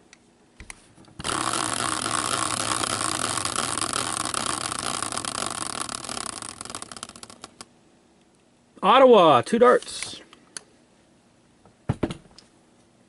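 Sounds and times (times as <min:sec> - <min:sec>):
prize wheel clicking: 0:01.2 - 0:07.6.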